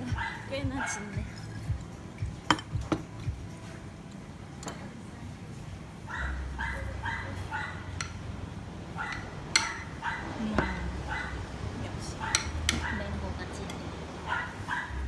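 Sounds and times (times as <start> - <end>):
dog barking: 0.1 - 1.2, 6.1 - 8.0, 9.0 - 11.4, 12.2 - 13.1, 14.3 - 15.0.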